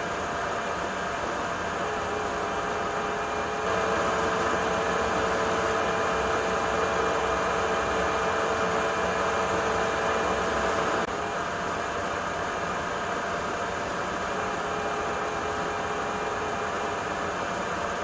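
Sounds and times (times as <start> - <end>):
stick vacuum motor whine: 1.8 - 11.1.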